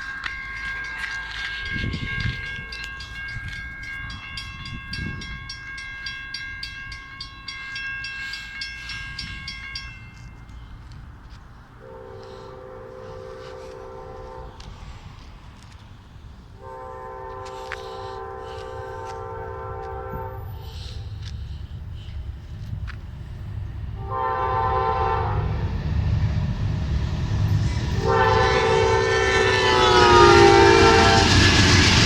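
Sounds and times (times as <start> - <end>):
crossing bells ringing: 0.0 - 14.6, 16.4 - 32.0
train rumbling past: 0.0 - 32.0
train horn chord: 11.8 - 14.8, 16.6 - 21.3, 24.0 - 26.5, 27.4 - 32.0.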